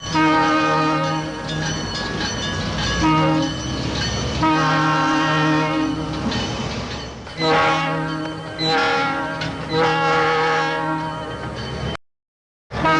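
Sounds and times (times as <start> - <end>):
train rumble and rail clatter: 0.0 - 12.0
train horn blasts: 0.1 - 1.4, 3.0 - 3.6, 4.4 - 6.0, 7.4 - 11.2.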